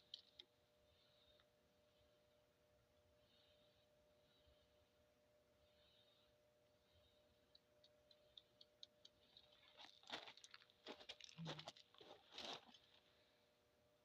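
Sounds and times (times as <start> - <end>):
crunching and scraping: 9.0 - 13.1.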